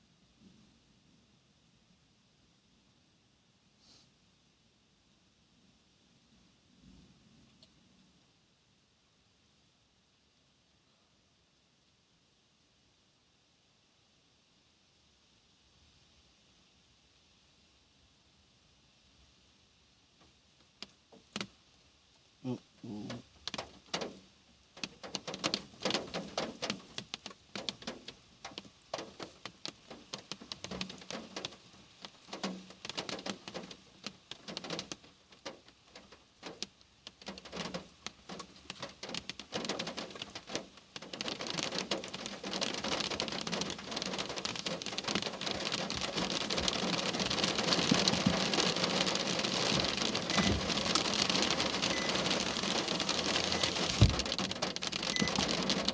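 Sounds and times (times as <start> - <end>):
raindrops hitting hard surface: 20.2 - 21.8, 22.4 - 55.9
heavy rain downpour: 20.6 - 55.9.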